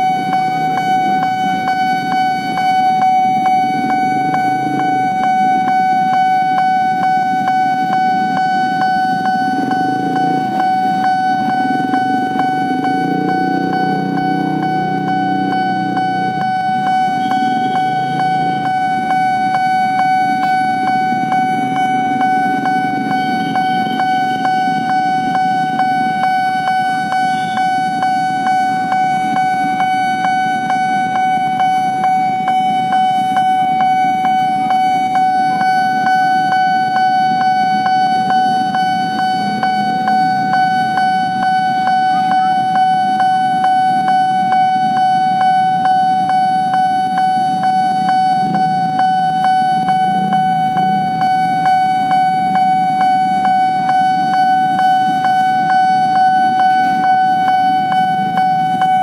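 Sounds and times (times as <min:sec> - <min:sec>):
level crossing warning bell: 0:00.0 - 0:59.0
vehicle engines running: 0:00.0 - 0:59.0.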